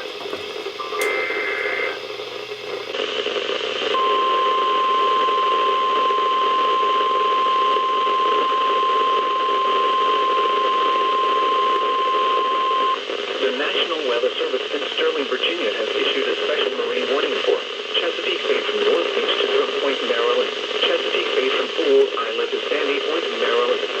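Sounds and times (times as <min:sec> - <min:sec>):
steady warning alarm tone: 0:00.0 - 0:02.9
radio static hiss: 0:00.0 - 0:04.0, 0:07.6 - 0:24.0.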